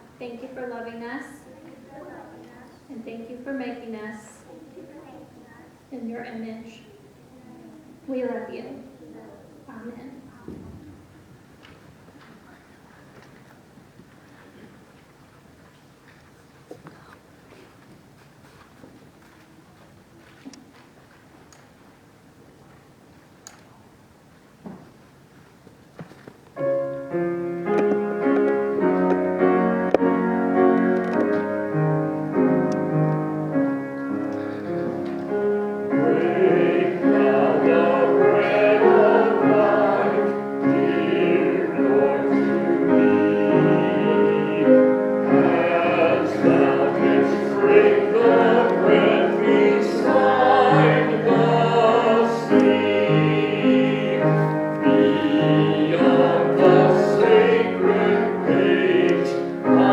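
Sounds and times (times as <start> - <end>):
piano playing: 26.6 - 59.9
voices singing: 34.2 - 59.9.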